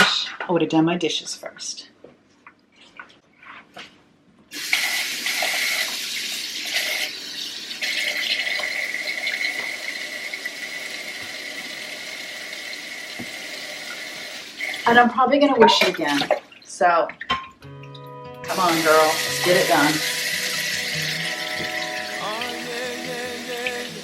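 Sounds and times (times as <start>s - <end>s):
faucet water running into sink: 4.5s - 16.8s, 18.5s - 24.0s.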